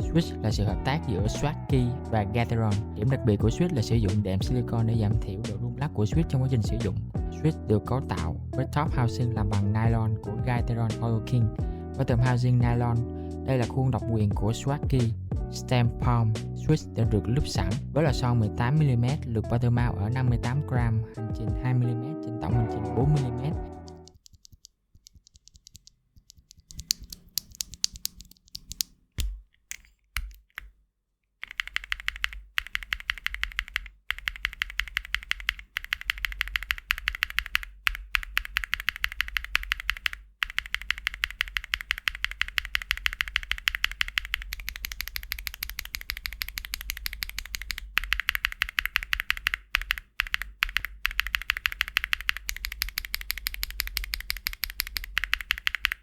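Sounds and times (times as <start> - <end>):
mechanical keyboard typing: 23.8 - 29.4, 31.4 - 56.0.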